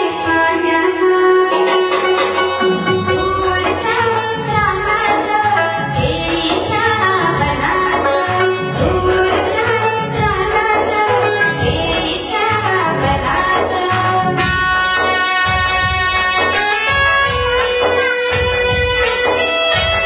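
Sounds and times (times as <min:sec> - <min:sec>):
girl singing: 0:00.0 - 0:02.2, 0:03.1 - 0:16.6
instrumental music with beat: 0:00.0 - 0:20.0.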